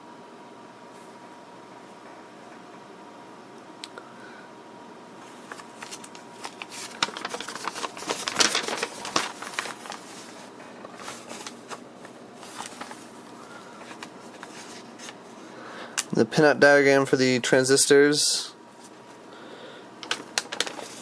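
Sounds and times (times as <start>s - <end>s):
paper rustling and crinkling: 5.2s - 15.4s, 20.0s - 21.0s.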